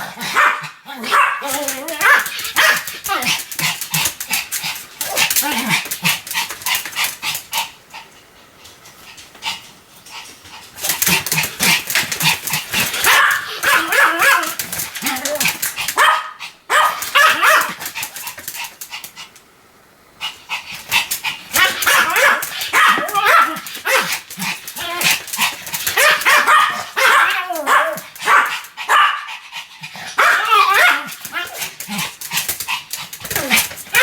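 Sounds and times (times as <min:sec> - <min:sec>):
small dog barking: 0:00.2 - 0:03.4, 0:13.0 - 0:17.8, 0:21.5 - 0:24.2, 0:25.9 - 0:29.3, 0:30.2 - 0:31.6.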